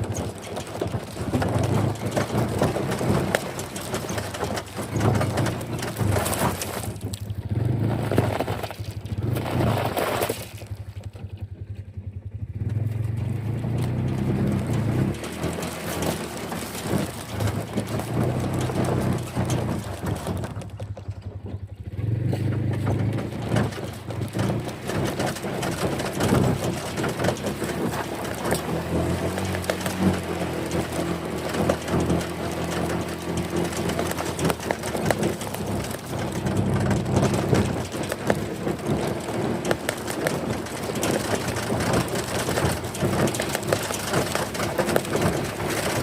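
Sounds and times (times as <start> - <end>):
small clicks and rattles: 0.0 - 11.9, 12.7 - 46.0
engine running steadily: 0.0 - 46.0.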